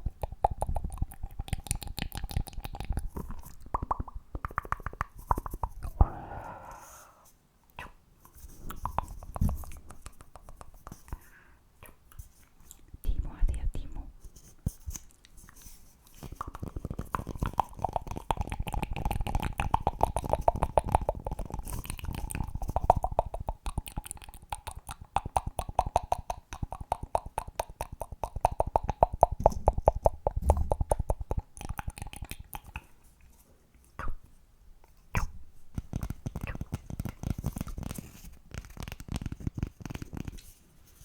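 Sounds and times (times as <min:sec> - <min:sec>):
fast clicking and popping: 0:00.0 - 0:06.0, 0:08.6 - 0:11.2, 0:14.7 - 0:33.0, 0:35.2 - 0:41.0.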